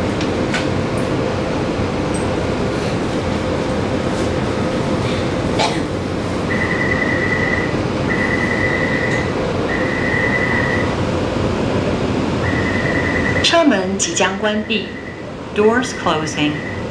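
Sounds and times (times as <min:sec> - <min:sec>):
train interior hum: 0:00.0 - 0:16.9
long high electronic beeps: 0:06.5 - 0:10.9, 0:12.4 - 0:13.6, 0:14.4 - 0:15.3.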